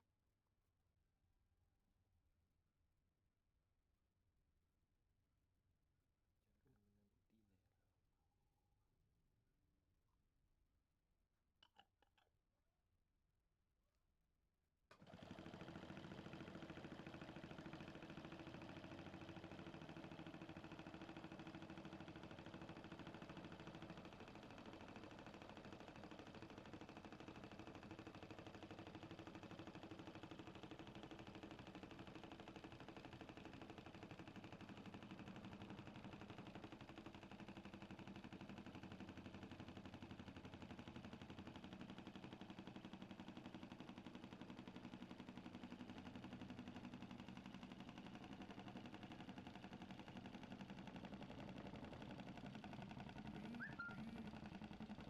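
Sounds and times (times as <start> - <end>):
small compressor humming: 15.0 - 55.0.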